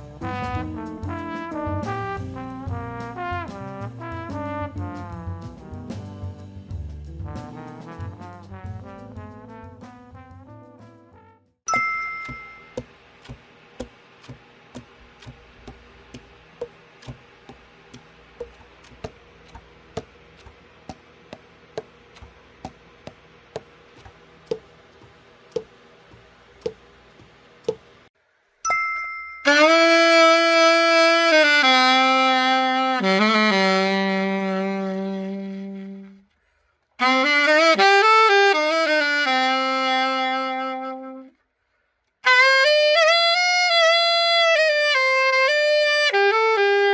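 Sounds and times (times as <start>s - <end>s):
alto saxophone held notes: 0.0s - 6.6s, 29.5s - 36.3s, 37.0s - 41.4s, 42.2s - 46.9s
faint regular ticks: 13.2s - 24.6s.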